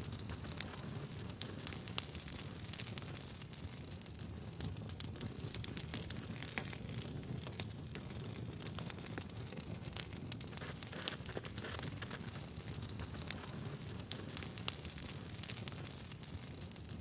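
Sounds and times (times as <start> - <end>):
campfire crackling and popping: 0.0 - 17.0
low rumble of flames: 0.0 - 17.0.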